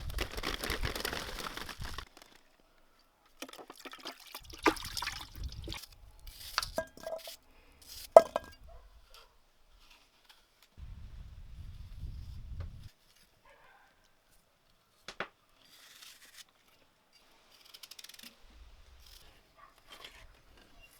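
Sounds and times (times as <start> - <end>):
water pouring: 3.4 - 5.8
kitchen handling noise: 6.6 - 7.3, 8.2 - 8.6.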